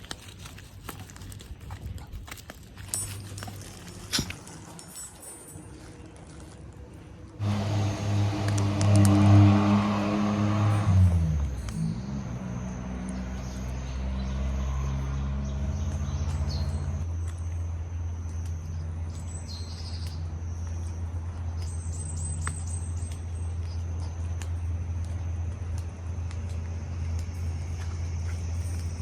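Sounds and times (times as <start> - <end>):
steady low hum: 2.5 - 29.0.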